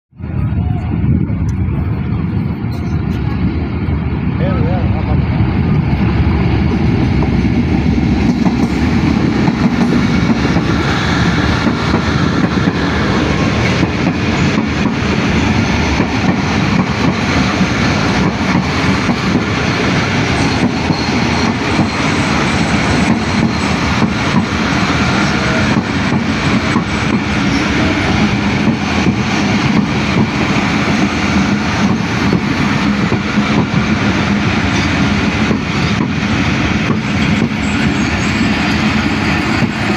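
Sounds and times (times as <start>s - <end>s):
train wheels clattering over joints: 8.1s - 33.8s.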